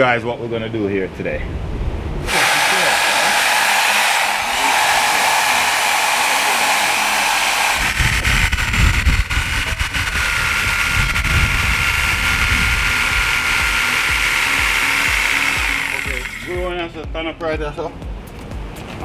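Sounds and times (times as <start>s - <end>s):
low rumble: 1.3s - 2.3s, 7.6s - 17.2s
motor running at high speed: 2.3s - 16.7s.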